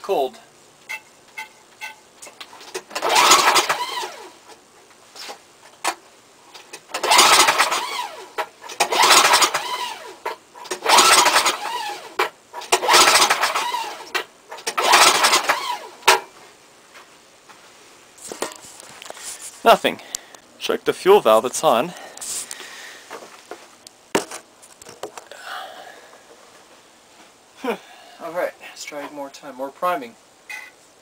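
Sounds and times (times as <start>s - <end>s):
engine pull-start cranking: 2.6s - 4.3s, 6.6s - 16.2s.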